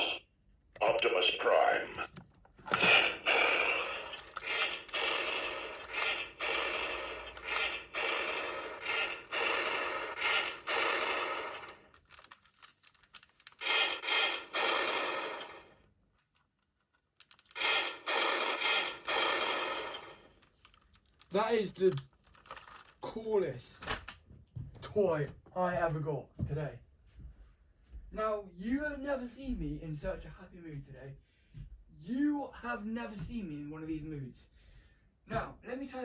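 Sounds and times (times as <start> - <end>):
toy electronic sound effects: 0.0 - 0.2, 2.7 - 11.8, 13.6 - 15.6, 17.5 - 20.2.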